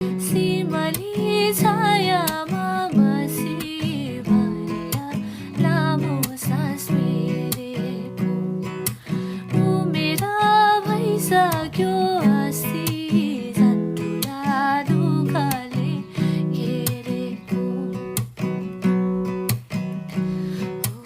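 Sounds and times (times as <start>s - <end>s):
strummed acoustic guitar music: 0.0s - 21.0s.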